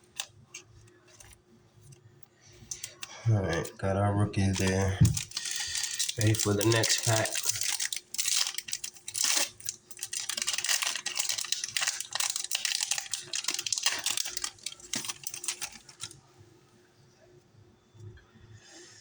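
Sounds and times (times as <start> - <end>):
foil wrapper tearing and crinkling: 0.0 - 1.4, 2.7 - 3.7, 4.5 - 16.2.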